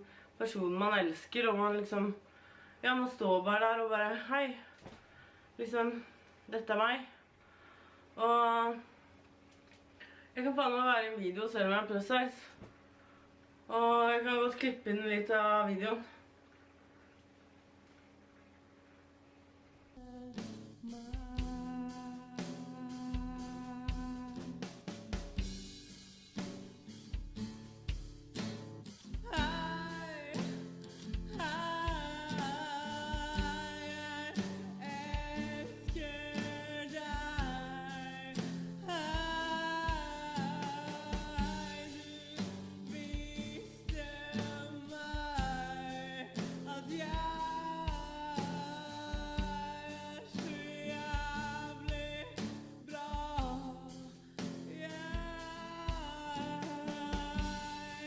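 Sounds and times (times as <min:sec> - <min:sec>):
woman singing: 0:20.0 - 0:24.7, 0:29.2 - 0:58.0
steady drum beat: 0:20.0 - 0:58.0.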